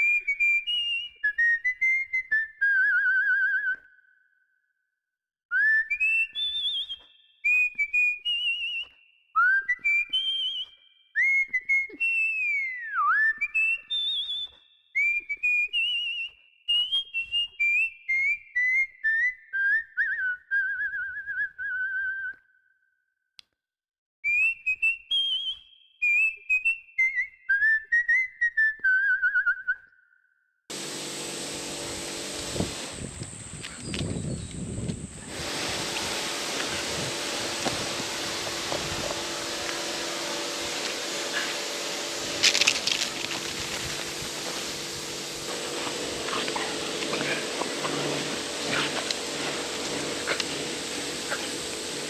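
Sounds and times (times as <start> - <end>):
person whistling a tune: 0.0 - 4.2, 5.5 - 22.6, 24.2 - 30.0.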